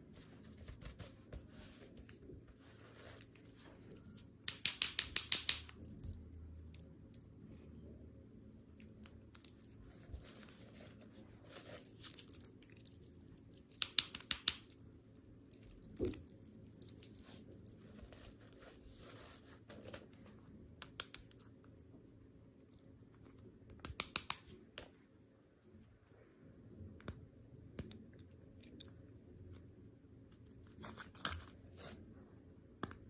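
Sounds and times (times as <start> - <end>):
candy wrapper crinkling and tearing: 11.5 - 19.9, 30.3 - 32.0.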